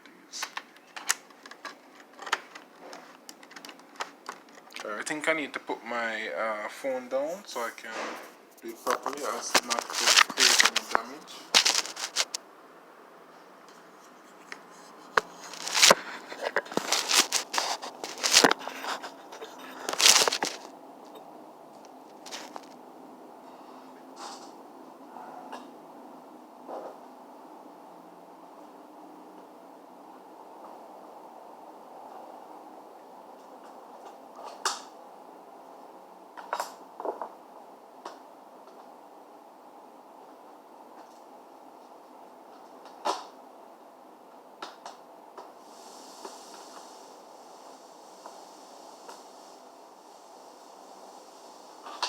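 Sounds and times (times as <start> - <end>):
faint steady hiss: 0.0 - 52.0
laptop parts clicking: 0.4 - 4.8
rustling and scraping handling noise: 0.4 - 5.3, 7.2 - 12.4, 13.6 - 22.8.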